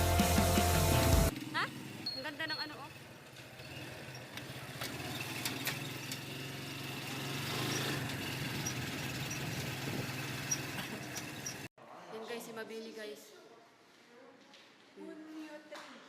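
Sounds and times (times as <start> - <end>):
engine running with pulsing hum: 4.8 - 11.7.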